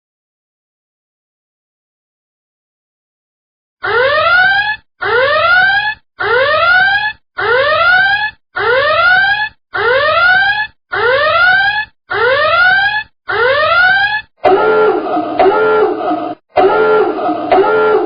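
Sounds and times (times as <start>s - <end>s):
alarm rising whoop: 13.4s - 18.0s.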